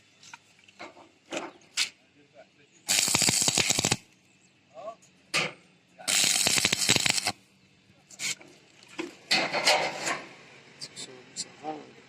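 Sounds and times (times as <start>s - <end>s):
welding arc crackling: 2.9s - 4.0s, 6.1s - 7.4s.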